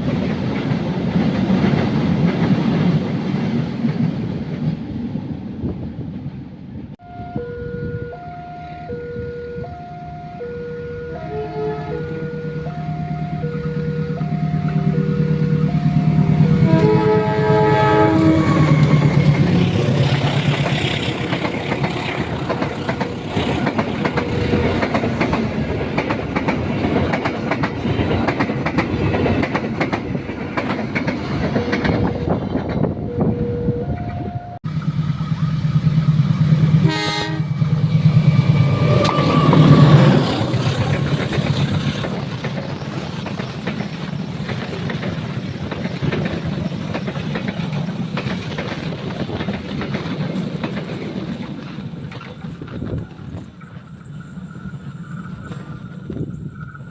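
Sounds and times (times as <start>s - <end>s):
train engine drone: 0.0s - 56.9s
train horn: 7.0s - 21.1s, 36.8s - 37.9s, 38.6s - 40.3s
wheels clacking over rail joints: 14.0s - 33.3s, 34.0s - 56.9s.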